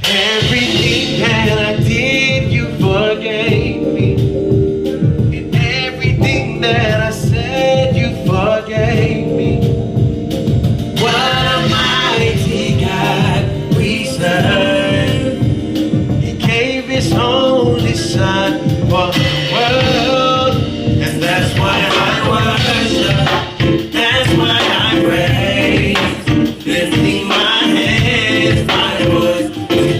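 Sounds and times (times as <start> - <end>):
gospel singing with band: 0.0 - 29.9.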